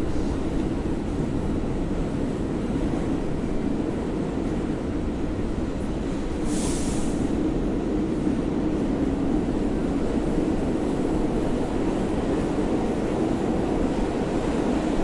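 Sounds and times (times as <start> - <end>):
subway train rumbling: 0.0 - 15.0
brief high hiss: 6.5 - 7.2.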